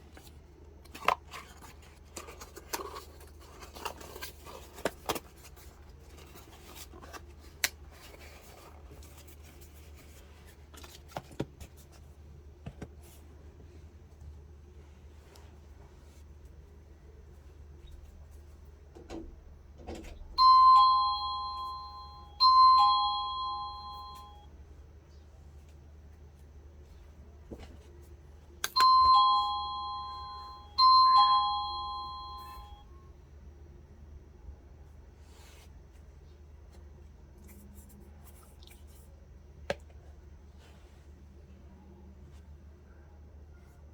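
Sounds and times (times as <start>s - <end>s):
rustling and handling noises: 0.0s - 19.0s, 20.9s - 32.8s, 34.8s - 42.8s
doorbell ding-dong chime: 20.4s - 24.5s, 28.7s - 32.8s.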